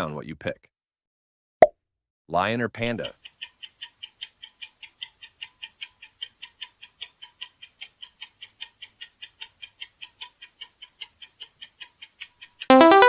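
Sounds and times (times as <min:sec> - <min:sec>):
fast clock ticking: 0:02.9 - 0:13.0.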